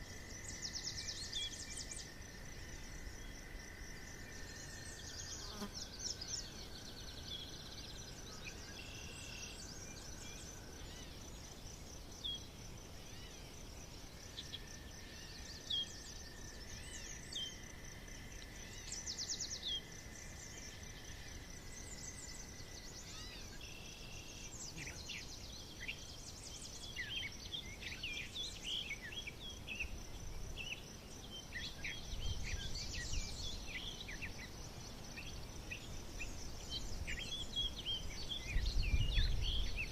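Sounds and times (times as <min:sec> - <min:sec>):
insect drone: 0:00.0 - 0:39.9
birds singing: 0:18.6 - 0:39.9.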